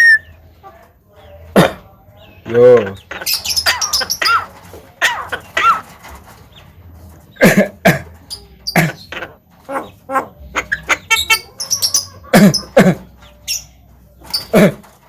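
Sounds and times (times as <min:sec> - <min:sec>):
bird mimicking coughs: 0:01.5 - 0:01.9, 0:05.0 - 0:05.8, 0:07.3 - 0:09.3, 0:12.2 - 0:13.3, 0:14.3 - 0:15.0
buzzy bird calls: 0:02.2 - 0:06.6, 0:08.2 - 0:15.0.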